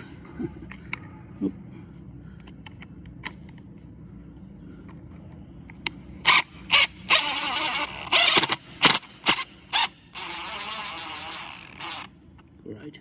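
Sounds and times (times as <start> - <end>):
cordless drill driving screws: 6.3 - 12.1.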